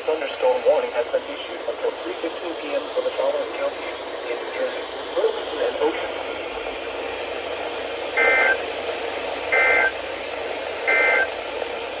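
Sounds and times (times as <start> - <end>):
radio hiss: 0.0 - 12.0
digital tone bursts: 8.2 - 8.6, 9.6 - 9.9.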